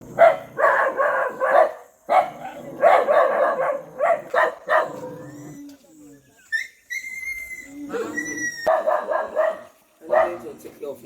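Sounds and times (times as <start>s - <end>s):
puppy barking and yelping: 0.2s - 5.6s, 6.5s - 10.4s.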